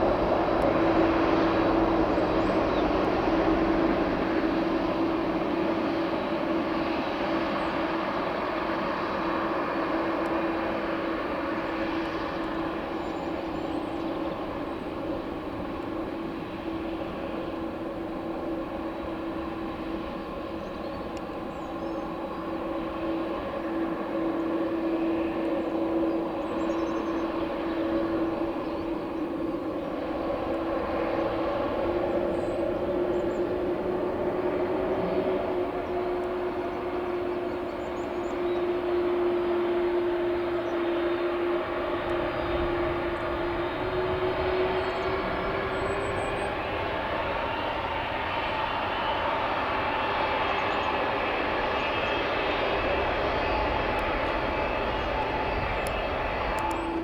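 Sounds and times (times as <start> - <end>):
jet engines running: 0.0 - 57.0.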